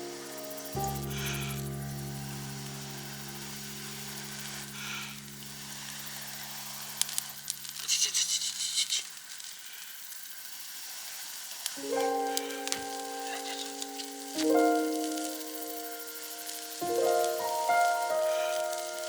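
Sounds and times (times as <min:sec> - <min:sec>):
held musical chord: 0:00.0 - 0:07.7, 0:11.8 - 0:19.0
steady hiss: 0:00.0 - 0:19.0
crackling and clicks: 0:11.6 - 0:19.0.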